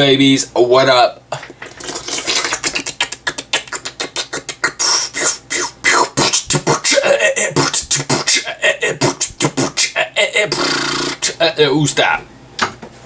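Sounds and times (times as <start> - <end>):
person beatboxing: 1.3 - 11.4.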